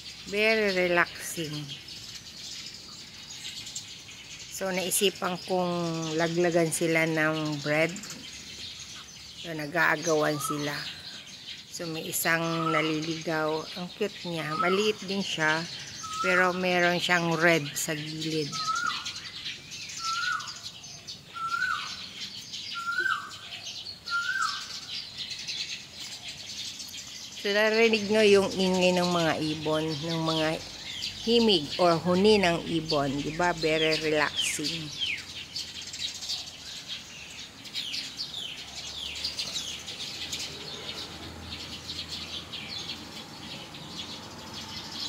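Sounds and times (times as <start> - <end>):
small birds chirping: 0.0 - 45.0
whistled bird call: 18.5 - 20.6, 21.3 - 23.4, 24.0 - 24.9.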